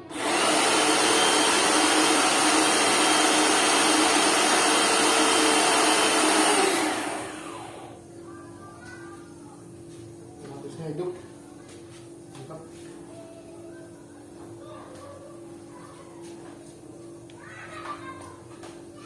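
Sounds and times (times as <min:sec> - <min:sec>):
pressure washer motor running: 0:00.0 - 0:08.0.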